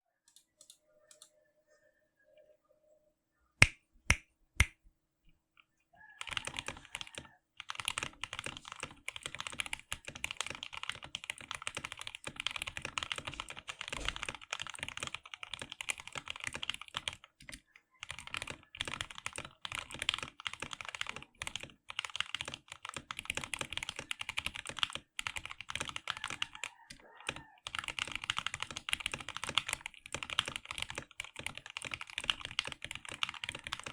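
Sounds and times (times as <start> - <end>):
fast typing on mechanical keyboard: 6.2 - 33.9.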